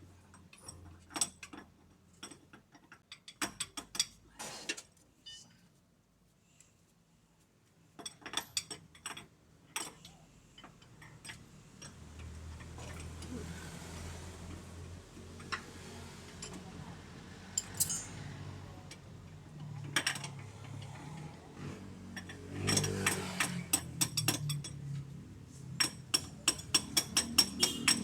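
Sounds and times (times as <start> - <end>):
hand tools clinking on metal: 17.6 - 18.3, 25.8 - 28.0.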